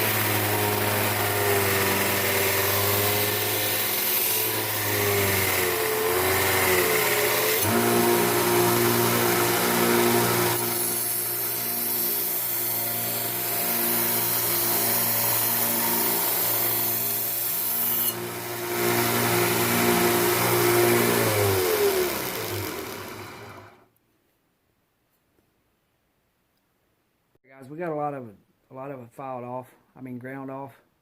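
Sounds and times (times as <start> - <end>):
electric grinder grinding steel: 0.0 - 23.8
grinder motor winding down: 0.0 - 23.8.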